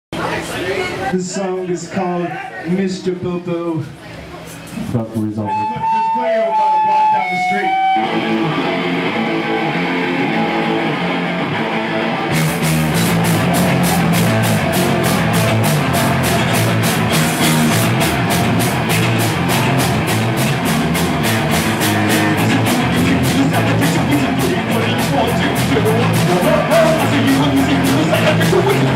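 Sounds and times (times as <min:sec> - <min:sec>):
electric guitar: 0:05.5 - 0:28.9
punk rock band playing live: 0:05.5 - 0:28.9
drums with fast cymbal beat: 0:12.4 - 0:28.9.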